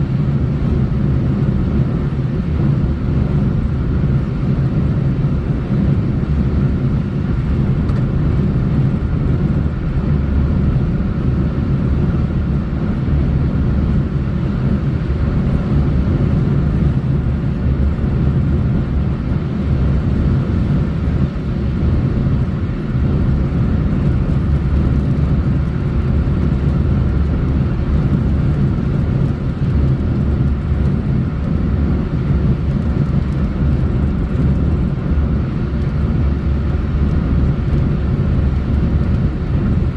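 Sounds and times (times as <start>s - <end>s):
car travelling along road: 0.0s - 39.9s.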